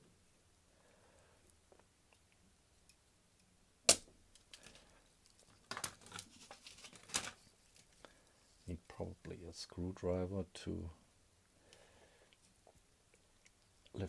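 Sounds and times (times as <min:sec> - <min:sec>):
desoldering handling noises: 0:01.5 - 0:09.0
crackling clicks and scrapes: 0:04.3 - 0:08.1.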